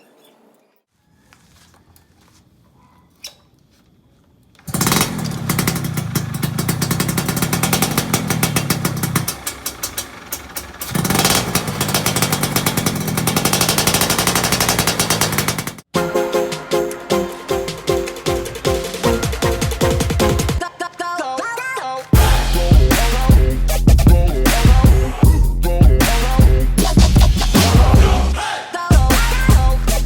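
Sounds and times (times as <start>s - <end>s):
two-stroke motorcycle engine revving: 4.6s - 15.9s, 22.2s - 28.3s.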